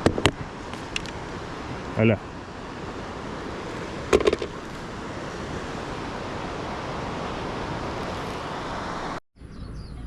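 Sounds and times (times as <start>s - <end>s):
outdoor background noise: 0.0s - 10.0s.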